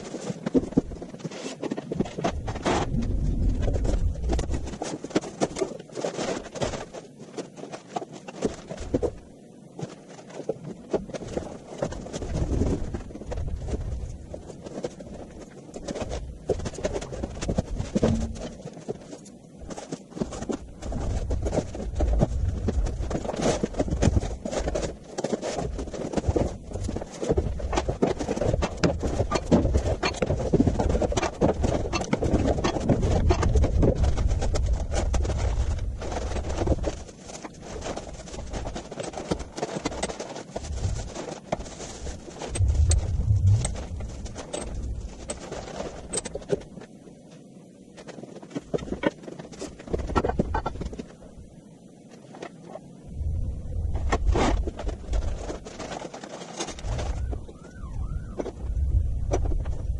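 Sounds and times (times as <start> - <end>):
low rumble: 2.3 - 4.8, 17.9 - 18.6, 42.1 - 46.1, 53.0 - 55.4.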